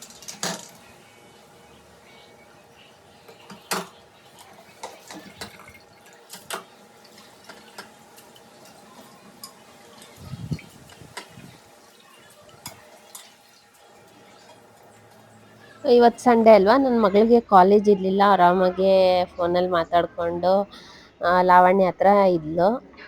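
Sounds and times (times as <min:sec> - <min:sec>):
dishes and pots clinking: 0:03.3 - 0:11.4, 0:12.0 - 0:15.0
water dripping and trickling: 0:04.3 - 0:15.8.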